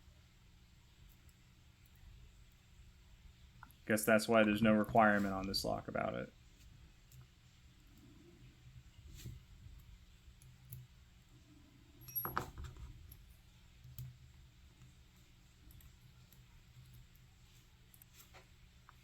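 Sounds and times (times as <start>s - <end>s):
metallic clink with ring: 12.0s - 12.5s
small metal lock parts tapping: 12.0s - 12.9s.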